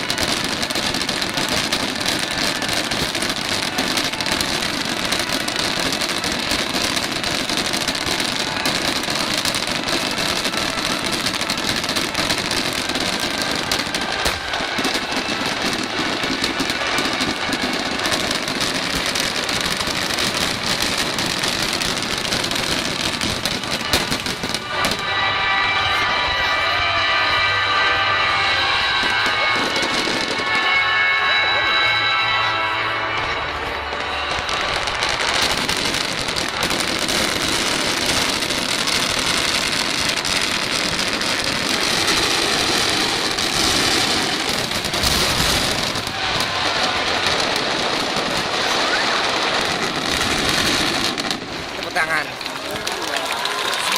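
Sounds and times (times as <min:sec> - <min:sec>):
fireworks crackling: 0:00.0 - 0:53.9.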